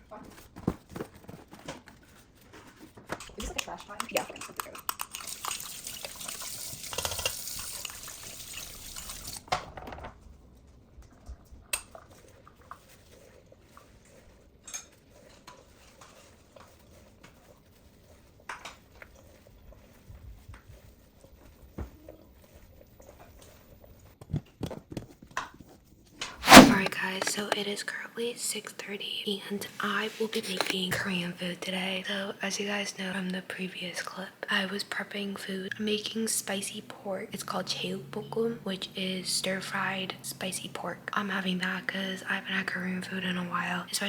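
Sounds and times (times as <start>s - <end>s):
water running from tap: 5.0s - 9.4s.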